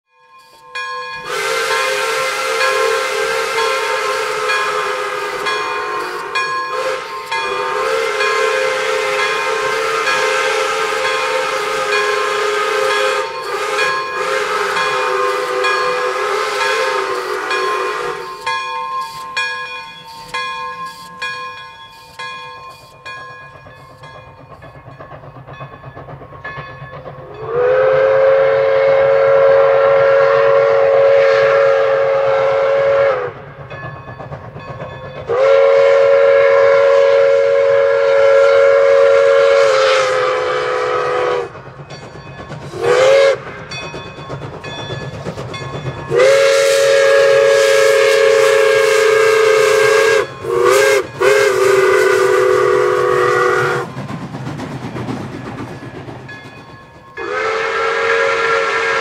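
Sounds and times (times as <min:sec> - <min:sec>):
steam whistle blasts: 0:00.4 - 0:19.4, 0:27.4 - 0:33.6, 0:35.2 - 0:41.6, 0:42.7 - 0:43.6, 0:46.1 - 0:54.0, 0:57.2 - 0:59.0.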